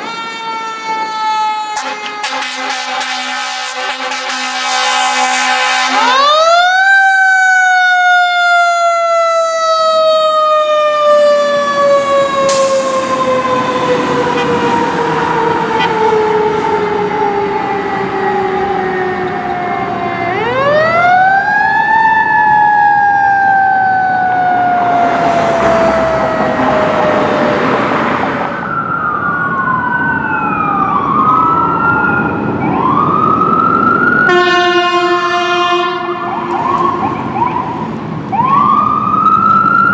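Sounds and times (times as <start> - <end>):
fire engine siren wailing: 0.0 - 39.9
air horn blast: 1.8 - 6.8, 12.5 - 15.0, 15.7 - 16.1, 34.3 - 36.4.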